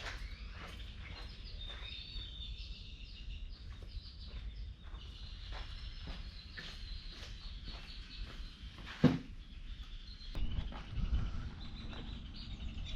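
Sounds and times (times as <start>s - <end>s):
birds chirping and whistling: 0.0s - 12.9s
low background rumble: 10.1s - 12.9s.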